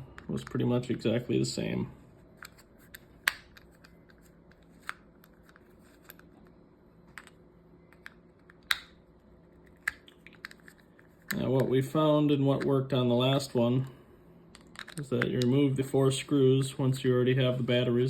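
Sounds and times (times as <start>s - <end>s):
plastic parts clicking: 14.5s - 15.4s.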